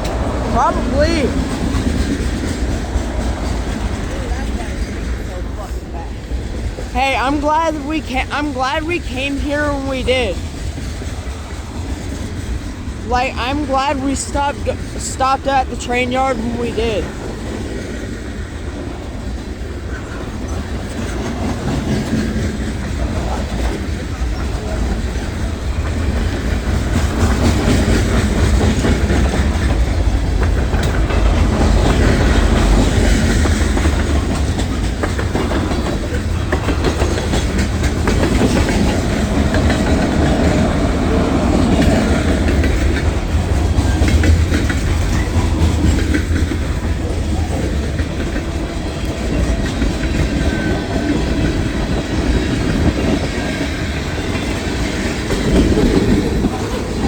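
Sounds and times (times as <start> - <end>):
freight train rumbling past: 0.0 - 57.0
wheels clacking over rail joints: 17.0 - 57.0.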